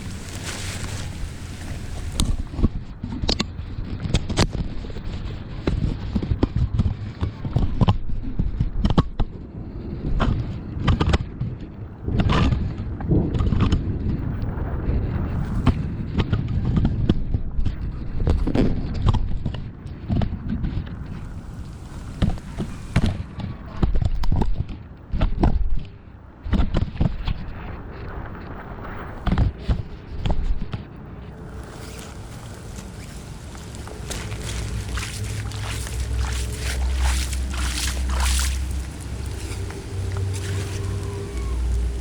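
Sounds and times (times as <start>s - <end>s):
steady low rumble: 31.4s - 42.0s.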